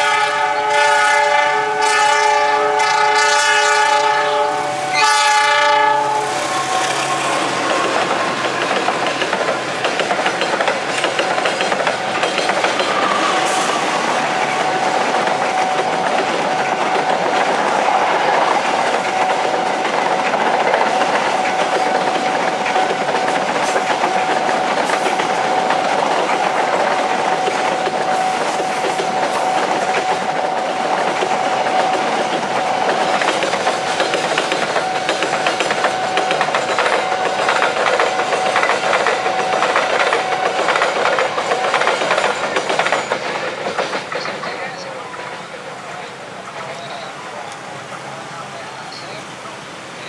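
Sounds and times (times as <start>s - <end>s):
train wheels clacking on rails: 0.0s - 48.1s.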